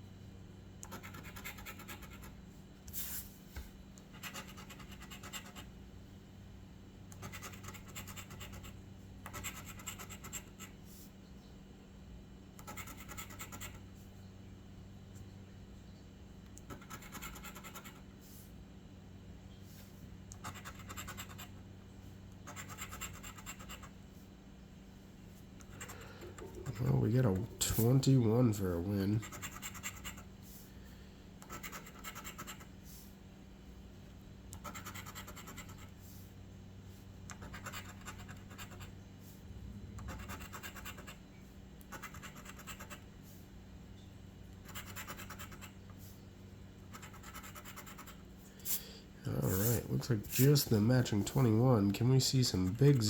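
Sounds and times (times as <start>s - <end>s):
faint low hum: 0.0s - 53.0s
scratching lottery ticket: 0.8s - 2.4s, 4.1s - 5.7s, 7.2s - 10.8s, 12.6s - 13.8s, 16.7s - 18.0s, 20.4s - 21.5s, 22.4s - 24.0s, 25.6s - 30.6s, 31.4s - 32.8s, 34.6s - 36.0s, 37.3s - 38.9s, 40.1s - 41.2s, 41.9s - 43.0s, 44.6s - 45.8s, 46.9s - 48.2s, 49.4s - 53.0s.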